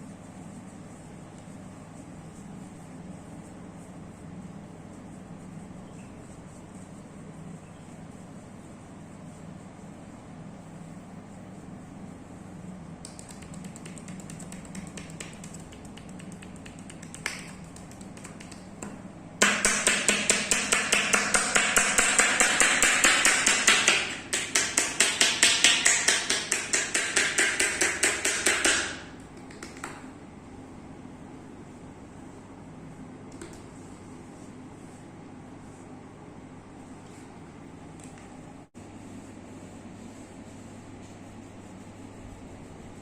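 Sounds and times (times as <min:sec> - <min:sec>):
hands slapping body: 0:13.0 - 0:30.1.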